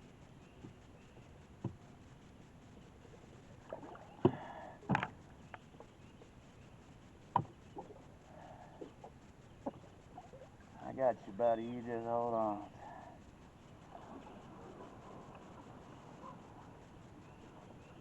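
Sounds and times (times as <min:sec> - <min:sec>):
water splashing: 0:03.6 - 0:05.2.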